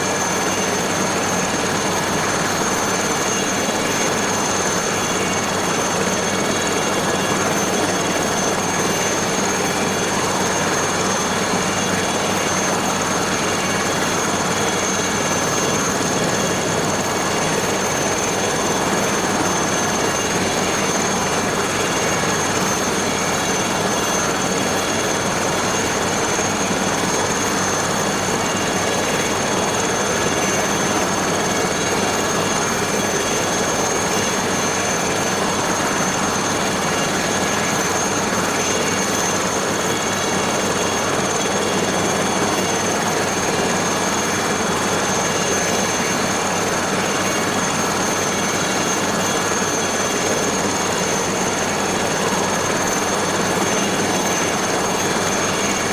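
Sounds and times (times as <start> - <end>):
helicopter engine and rotor: 0.0 - 55.9
turboshaft high whine: 0.0 - 55.9.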